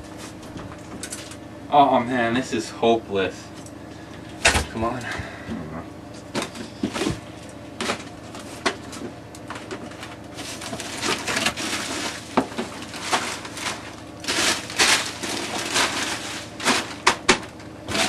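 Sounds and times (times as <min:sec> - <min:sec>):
frozen items clunking: 0:06.3 - 0:18.0
plastic packaging crinkling: 0:09.5 - 0:18.0.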